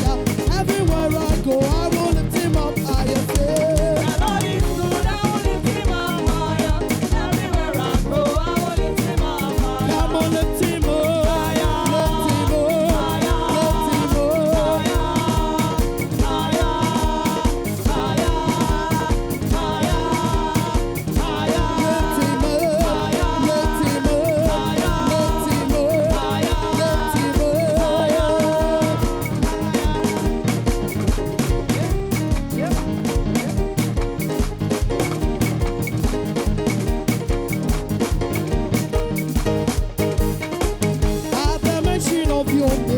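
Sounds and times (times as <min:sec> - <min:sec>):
person singing: 0:00.0 - 0:30.9, 0:41.3 - 0:42.9
live band playing gospel music: 0:00.0 - 0:42.9
steady drum beat: 0:00.0 - 0:42.9.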